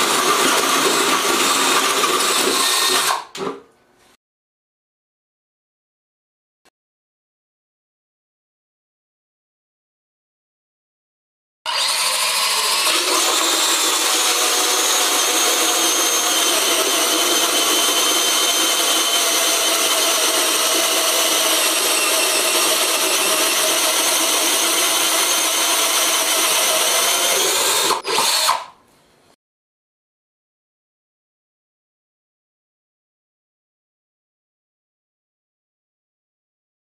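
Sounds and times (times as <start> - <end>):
cordless drill whining: 0.0 - 3.4, 11.7 - 28.7.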